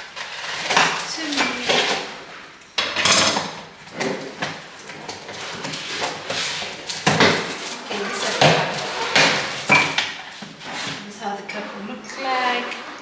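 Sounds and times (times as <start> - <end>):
knife cutting packaging: 0.0 - 2.3, 3.6 - 11.1
scraping and rustling: 0.0 - 13.0.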